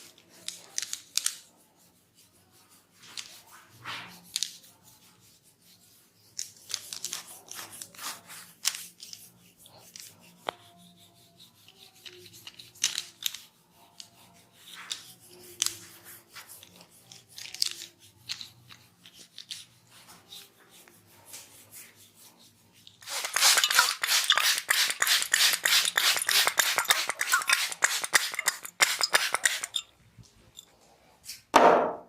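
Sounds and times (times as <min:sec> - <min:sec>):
hands rubbing head: 0:14.1 - 0:29.8.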